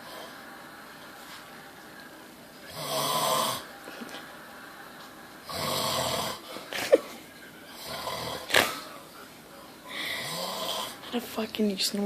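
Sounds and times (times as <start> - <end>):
man snoring loudly: 2.7 - 3.7, 5.4 - 6.4, 7.8 - 8.6, 10.1 - 11.0.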